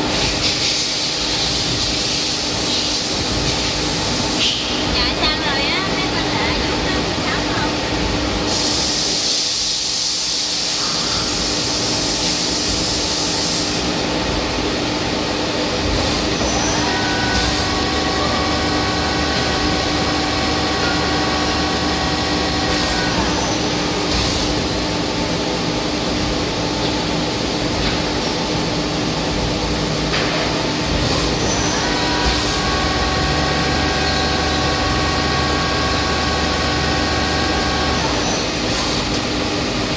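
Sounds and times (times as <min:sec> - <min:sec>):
hiss: 0:00.1 - 0:04.8, 0:08.5 - 0:14.0
machine hum: 0:01.2 - 0:39.9
high spindle whine: 0:15.8 - 0:25.4, 0:31.0 - 0:38.7.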